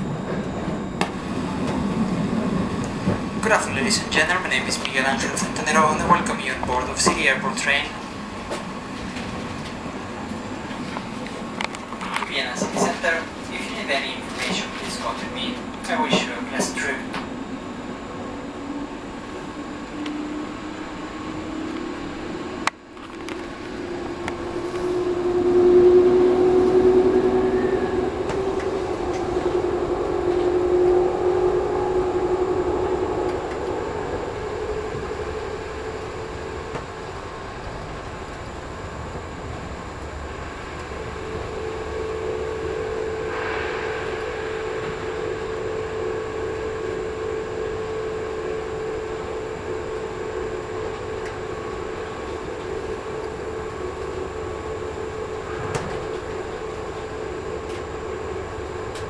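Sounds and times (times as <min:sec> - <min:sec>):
train rumble: 0:00.0 - 0:59.0
electric motor whine: 0:15.9 - 0:59.0.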